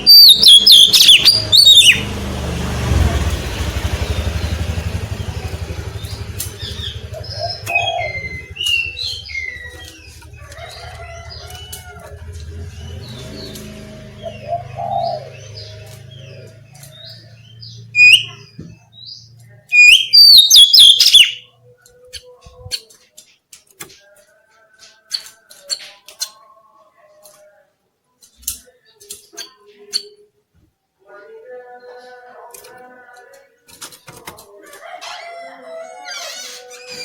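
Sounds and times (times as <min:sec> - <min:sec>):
bird singing whistled notes: 0:00.0 - 0:02.0, 0:06.6 - 0:10.1, 0:17.0 - 0:19.1, 0:19.7 - 0:21.5.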